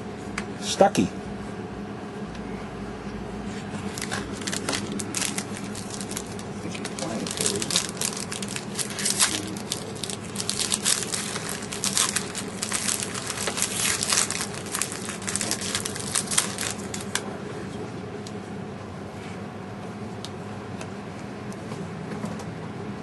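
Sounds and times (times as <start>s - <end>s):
card pack wrappers crinkling: 3.8s - 17.2s.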